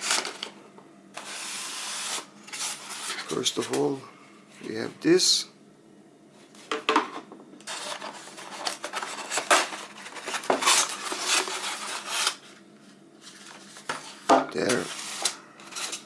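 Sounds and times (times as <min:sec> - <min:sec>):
packaging rustling and scraping: 0:00.0 - 0:00.6, 0:01.2 - 0:03.9, 0:07.6 - 0:16.0.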